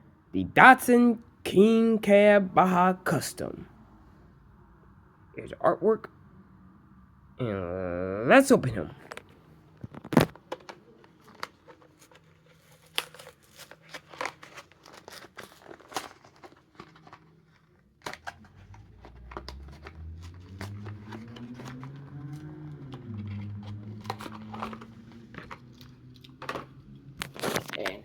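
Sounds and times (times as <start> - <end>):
blister pack crackling and crinkling: 9.8 - 28.0.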